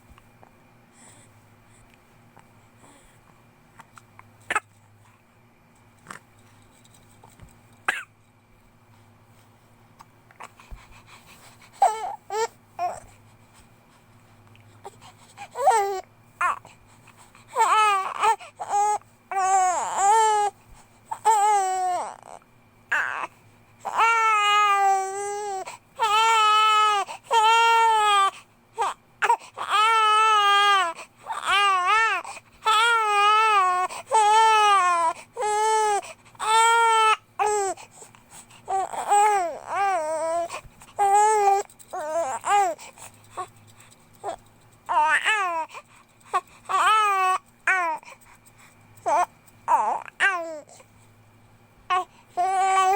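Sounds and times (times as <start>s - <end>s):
baby crying: 15.6s - 16.6s, 17.6s - 20.5s, 21.2s - 37.8s, 38.7s - 42.8s, 44.2s - 45.7s, 46.3s - 48.0s, 49.1s - 50.8s, 51.9s - 52.9s.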